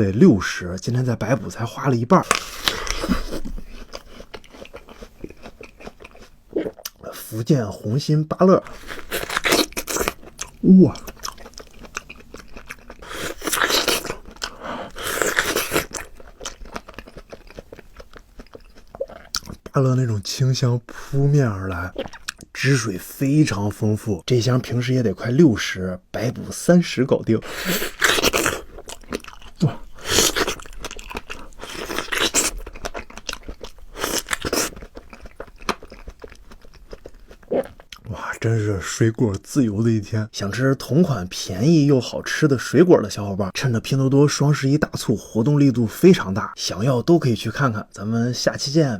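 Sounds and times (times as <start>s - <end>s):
crunching bites and chewing: 2.2s - 7.0s, 8.7s - 19.7s, 27.4s - 38.0s.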